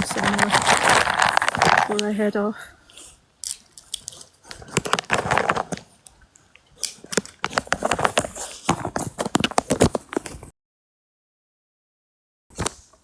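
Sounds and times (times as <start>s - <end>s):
bag of peanuts rustling: 0.0s - 2.2s, 4.6s - 5.9s.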